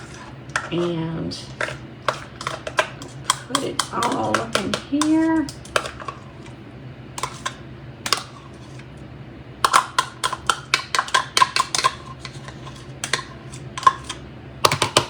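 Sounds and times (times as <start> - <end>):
spoon clinking against dish: 1.6 - 6.2.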